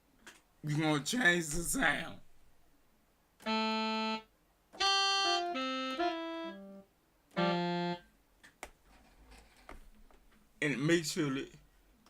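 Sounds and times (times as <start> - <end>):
synthesizer notes: 3.4 - 4.2, 4.8 - 6.8, 7.4 - 8.0.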